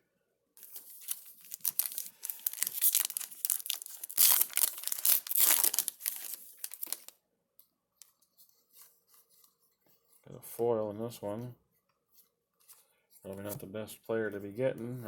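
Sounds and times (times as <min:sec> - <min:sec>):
plastic wrapper tearing and crinkling: 0:00.6 - 0:07.2.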